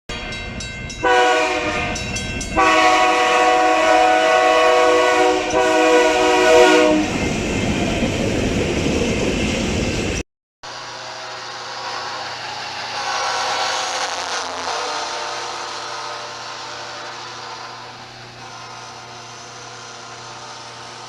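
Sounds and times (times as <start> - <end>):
train running on rails: 0.1 - 21.0
train horn: 1.0 - 7.2, 12.9 - 19.0, 19.6 - 21.0.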